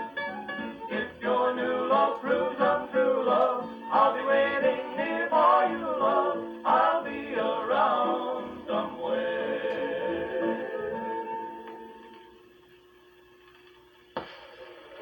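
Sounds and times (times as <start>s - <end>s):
acoustic guitar: 0.0s - 12.4s
vocal harmony group singing: 0.9s - 11.4s.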